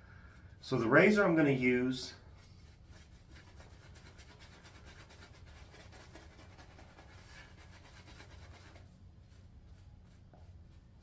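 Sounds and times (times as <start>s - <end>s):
shaving brush swishing lather: 0.7s - 11.0s.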